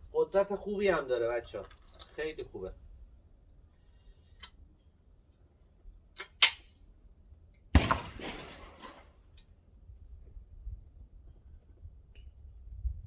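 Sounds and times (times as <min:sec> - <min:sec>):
sharp metallic click: 0:06.2 - 0:06.7
shotgun shot: 0:07.7 - 0:09.3.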